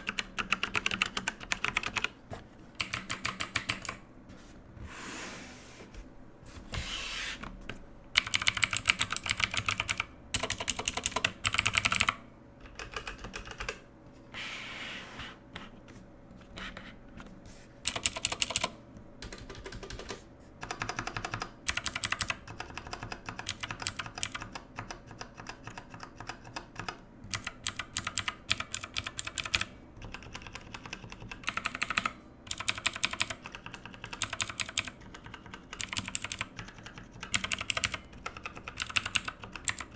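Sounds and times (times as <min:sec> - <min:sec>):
mechanical keyboard typing: 0:00.0 - 0:02.2, 0:02.8 - 0:04.0, 0:08.2 - 0:13.8, 0:17.8 - 0:39.9.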